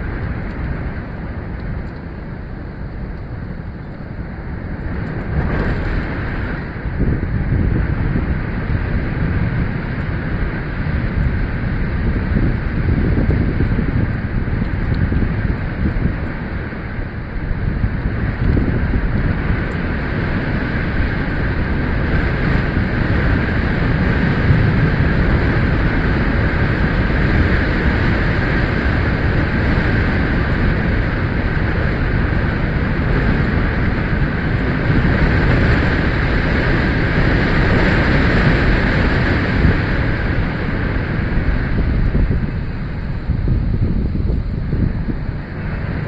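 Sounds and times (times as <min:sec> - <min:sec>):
strong storm wind: 0:00.0 - 0:46.0.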